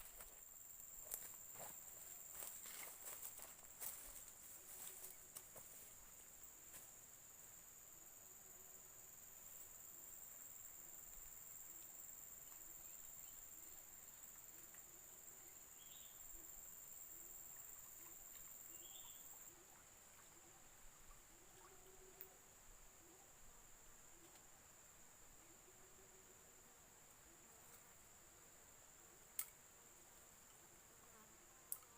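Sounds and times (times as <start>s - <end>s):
high-pitched insect chorus: 0.0s - 20.3s.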